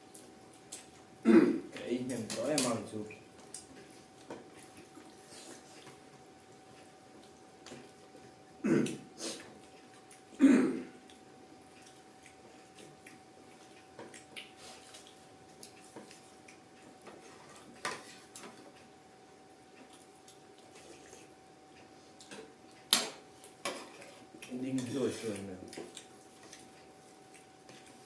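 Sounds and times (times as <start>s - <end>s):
person clearing throat: 1.2s - 1.7s, 8.6s - 9.1s, 10.4s - 11.0s.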